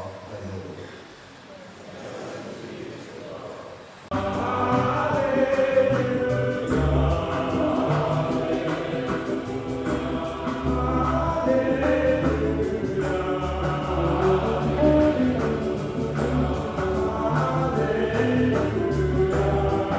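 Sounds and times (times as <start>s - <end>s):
choir singing: 4.1s - 19.9s
instrumental accompaniment with beat: 4.1s - 19.9s.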